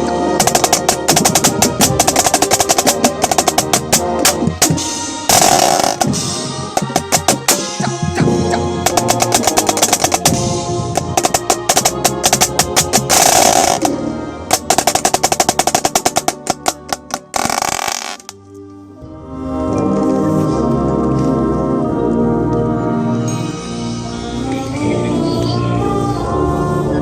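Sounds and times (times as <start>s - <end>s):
drum and bugle corps music: 0.0s - 18.4s
snare drum rolls: 0.4s - 18.2s.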